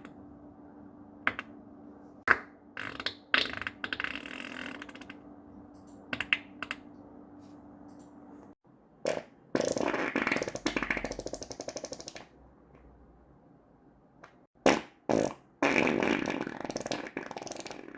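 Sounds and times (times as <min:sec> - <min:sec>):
farts: 0:09.1 - 0:12.2, 0:14.6 - 0:17.9.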